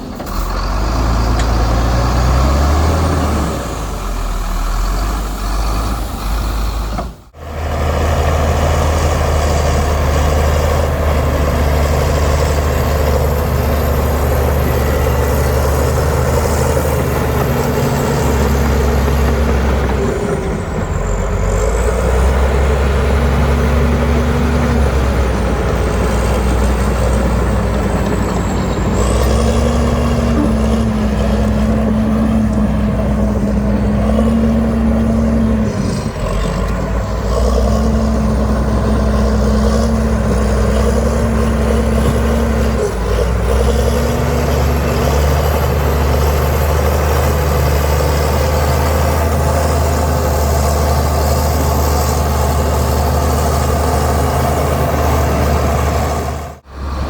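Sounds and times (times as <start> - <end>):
heavy diesel engine running hard: 0.0 - 57.0.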